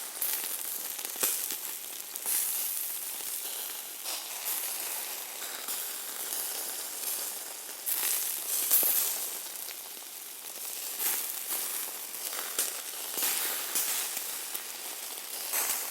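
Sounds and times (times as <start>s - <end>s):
meat sizzling on a grill: 0.0s - 15.9s.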